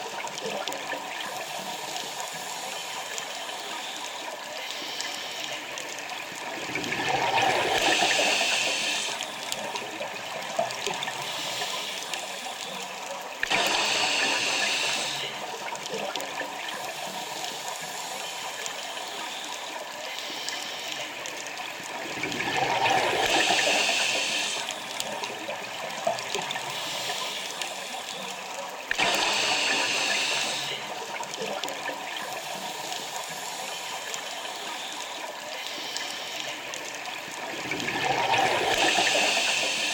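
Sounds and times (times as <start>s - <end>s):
rush of bubbles: 6.0s - 11.8s, 13.3s - 18.3s, 21.5s - 27.4s, 28.8s - 33.9s, 37.0s - 39.9s
diver breathing through regulator: 13.6s - 15.4s.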